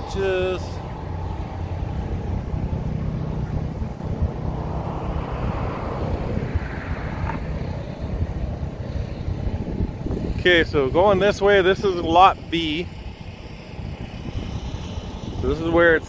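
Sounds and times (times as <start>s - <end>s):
street traffic: 0.0s - 10.4s, 12.4s - 15.4s
wind buffeting microphone: 0.0s - 16.0s
vehicle passing: 0.8s - 9.2s.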